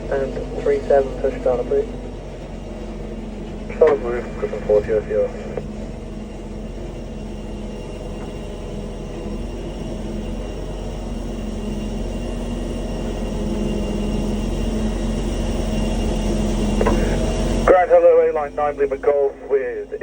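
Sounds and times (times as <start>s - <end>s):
jet engines humming and whining: 0.0s - 20.0s.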